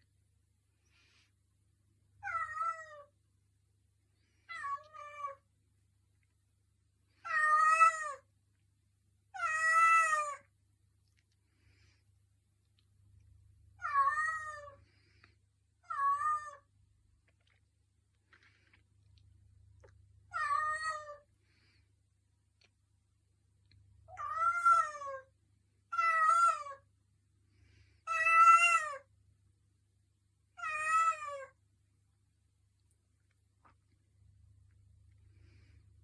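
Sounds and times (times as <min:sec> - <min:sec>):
cat meowing: 0:02.2 - 0:03.1, 0:04.5 - 0:05.4, 0:20.3 - 0:21.2, 0:24.1 - 0:25.3, 0:28.1 - 0:29.1, 0:30.6 - 0:31.6.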